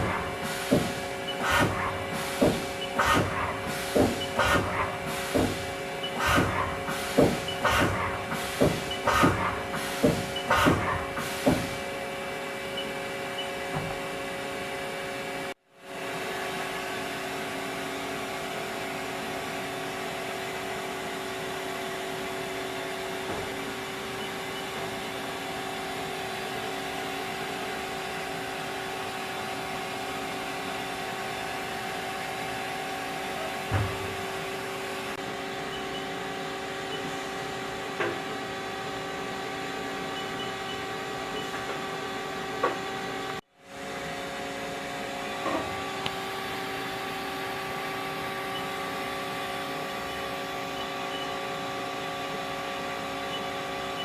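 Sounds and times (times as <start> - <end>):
lathe machine hum: 0.0 - 15.5.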